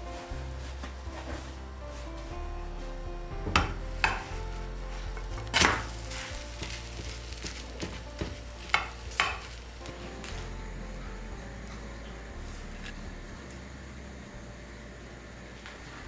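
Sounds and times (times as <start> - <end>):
soft background music: 0.0 - 16.0
utensil scraping a pot: 3.5 - 13.7
utensils clinking against dishes: 5.0 - 10.4.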